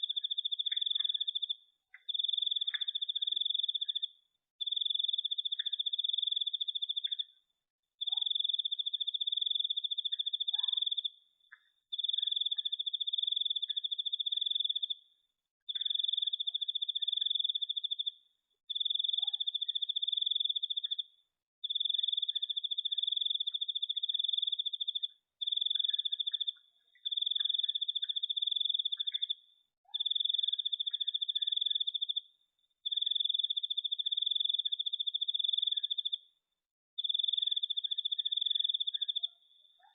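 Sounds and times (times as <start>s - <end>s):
faint chirps and ticks: 0.0s - 39.9s
cricket trilling: 18.7s - 29.4s.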